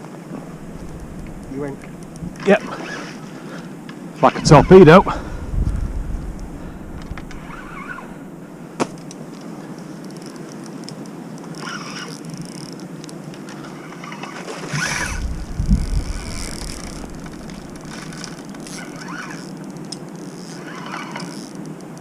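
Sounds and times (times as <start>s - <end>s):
wind buffeting microphone: 0.3s - 8.8s, 14.7s - 19.0s.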